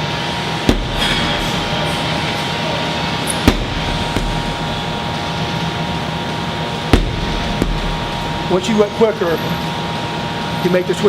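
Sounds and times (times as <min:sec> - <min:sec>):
steady background hum: 0:00.0 - 0:11.0
bounce knock: 0:00.7 - 0:01.8, 0:03.5 - 0:05.0, 0:07.0 - 0:08.5
sledgehammer striking tire: 0:00.7 - 0:02.2, 0:03.3 - 0:05.4, 0:06.9 - 0:08.8.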